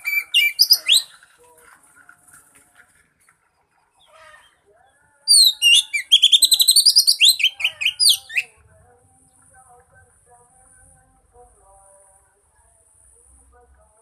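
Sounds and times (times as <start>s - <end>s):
bird whistling song: 0.0s - 1.2s, 5.3s - 8.6s.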